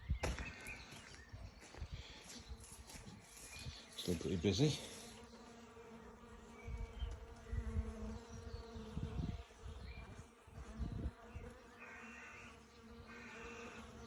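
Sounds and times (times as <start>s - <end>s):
bees buzzing: 1.7s - 14.0s.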